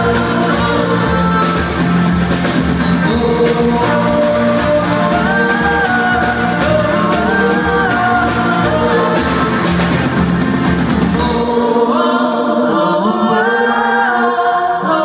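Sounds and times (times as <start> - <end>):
person singing long notes: 0.0 - 10.3
pulsing bass: 0.0 - 12.0
live band playing: 0.0 - 14.6.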